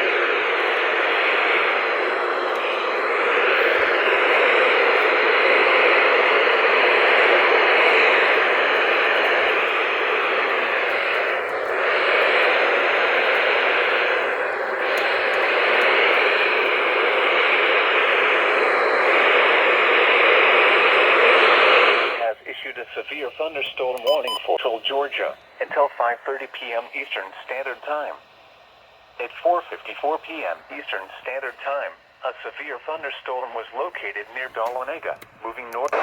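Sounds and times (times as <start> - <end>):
radio static hiss: 0.0 - 28.3, 29.1 - 36.0.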